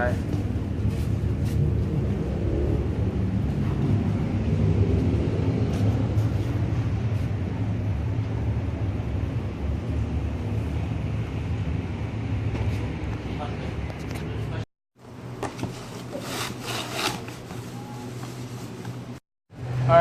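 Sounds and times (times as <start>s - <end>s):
low vehicle rumble: 0.0s - 15.4s.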